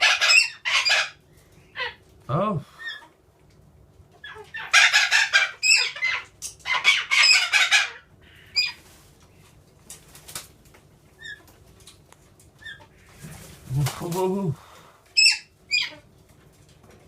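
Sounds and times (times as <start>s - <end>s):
parrots screeching: 0.0s - 2.0s, 4.2s - 8.8s, 11.2s - 11.5s, 12.6s - 13.1s, 15.2s - 16.0s.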